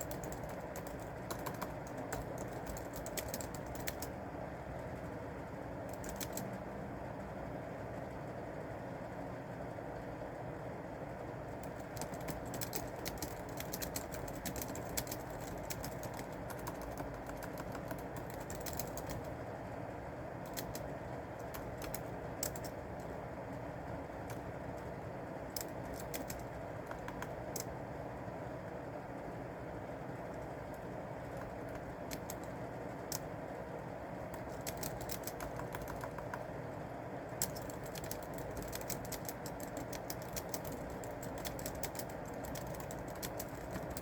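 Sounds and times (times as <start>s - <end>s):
keyboard key clicks: 0.0s - 4.1s, 5.9s - 6.5s, 11.6s - 19.3s, 20.5s - 23.2s, 25.5s - 27.7s, 30.4s - 33.3s, 34.3s - 36.5s, 37.4s - 44.0s
low background rumble: 0.0s - 44.0s.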